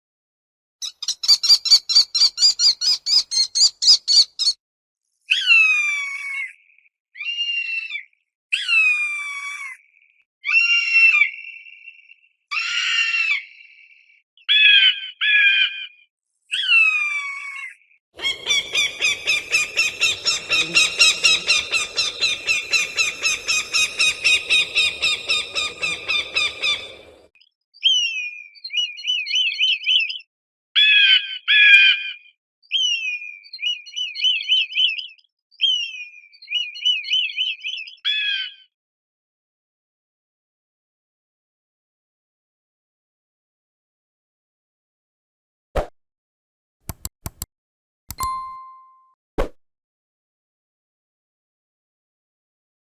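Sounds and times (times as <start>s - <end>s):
falcon calling: 18.2s - 27.3s.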